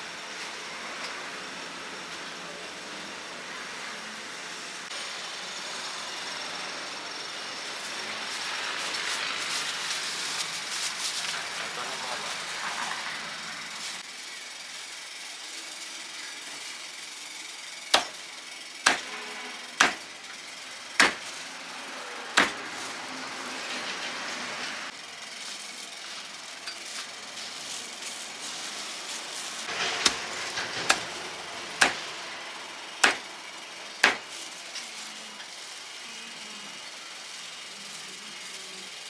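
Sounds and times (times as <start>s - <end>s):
cleaver chopping on wooden block: 18.0s - 18.2s, 18.9s - 19.1s, 19.8s - 20.1s, 21.0s - 21.3s, 22.4s - 22.6s, 30.9s - 31.1s, 31.8s - 32.0s, 33.0s - 33.2s, 34.0s - 34.3s.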